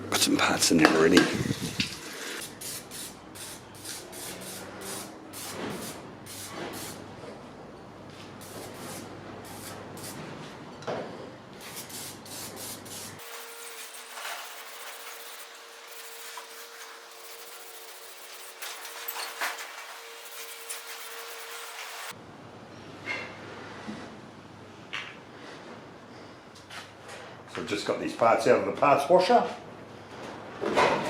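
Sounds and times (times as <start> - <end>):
parts washer solvent hiss: 1.3 - 7.2, 8.2 - 10.2, 11.6 - 22.2
metal parts clinking: 13.2 - 22.1.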